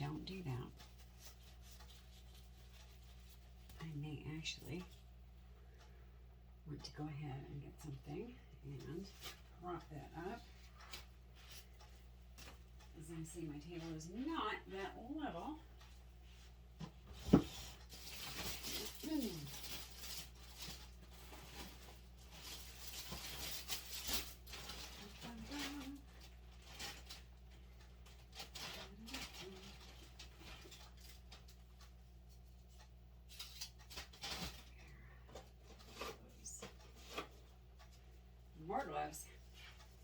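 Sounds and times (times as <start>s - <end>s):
rustling handling sounds: 0.0s - 6.0s, 8.7s - 40.0s
steady low hum: 0.0s - 40.0s.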